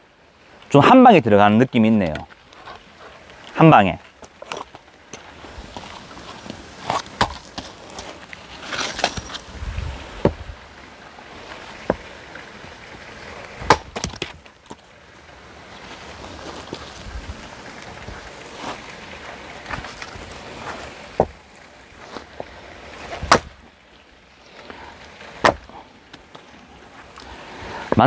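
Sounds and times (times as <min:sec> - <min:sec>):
hatchet splitting firewood: 0:04.2 - 0:09.5, 0:11.8 - 0:12.1, 0:13.2 - 0:14.8, 0:19.6 - 0:21.4, 0:22.0 - 0:23.7, 0:25.1 - 0:26.4.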